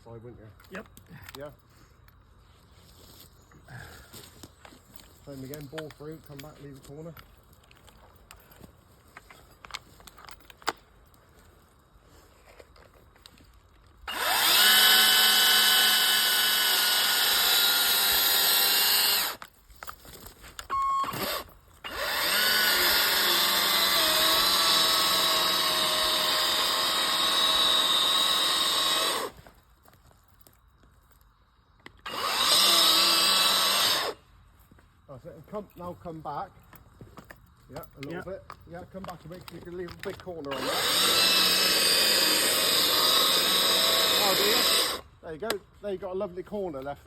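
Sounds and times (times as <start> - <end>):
electric chainsaw cutting wood: 14.1 - 19.5, 21.0 - 29.4, 32.0 - 34.2, 40.5 - 45.1.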